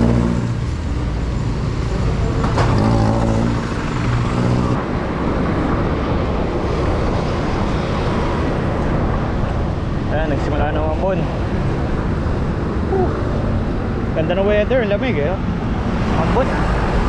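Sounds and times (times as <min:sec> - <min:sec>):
vehicle engine humming: 0:00.0 - 0:09.8
road noise: 0:00.0 - 0:17.0.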